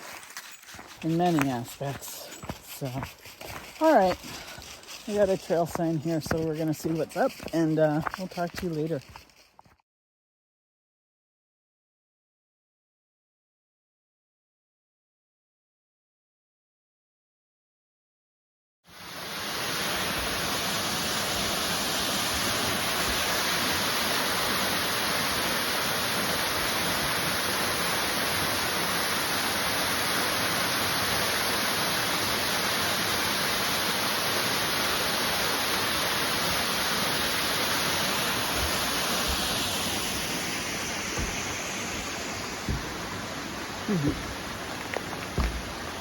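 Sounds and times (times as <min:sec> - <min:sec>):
waterfall rushing: 0:19.0 - 0:46.0.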